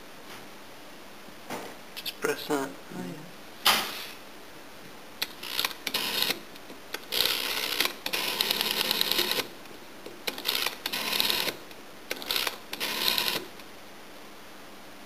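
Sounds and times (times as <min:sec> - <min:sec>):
rotary telephone dial whirring clicks: 0:05.2 - 0:06.4, 0:07.0 - 0:09.5, 0:10.2 - 0:13.5.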